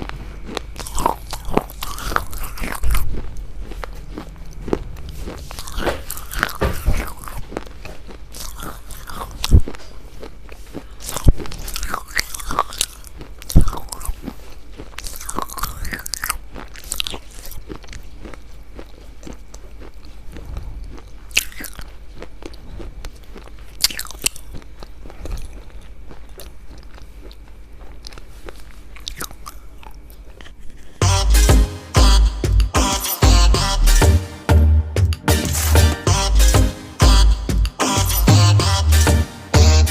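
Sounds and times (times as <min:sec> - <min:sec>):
steady low hum: 0:00.0 - 0:16.6, 0:17.2 - 0:39.9
crunching and chewing crisp food: 0:00.0 - 0:31.6.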